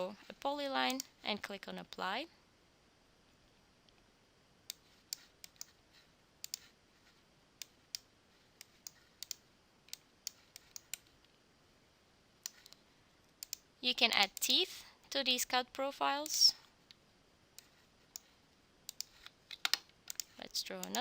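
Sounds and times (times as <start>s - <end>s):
computer mouse clicking: 4.7s - 5.8s, 6.4s - 6.8s, 7.6s - 11.3s, 12.4s - 14.5s, 17.6s - 21.0s.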